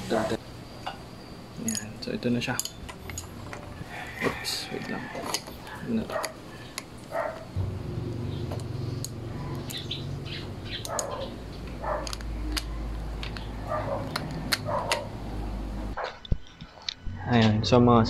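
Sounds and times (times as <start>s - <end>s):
birds chirping: 0.0s - 16.0s
steady low hum: 5.4s - 18.0s.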